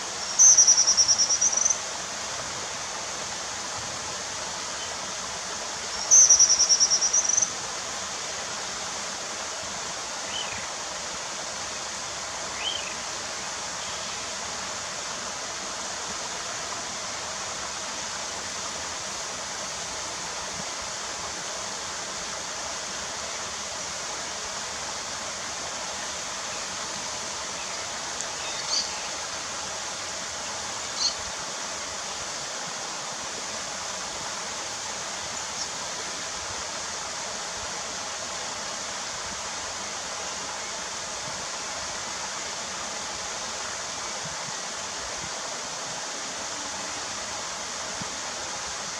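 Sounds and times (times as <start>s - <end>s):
high bird chirps: 28.3s - 29.2s, 30.9s - 31.2s.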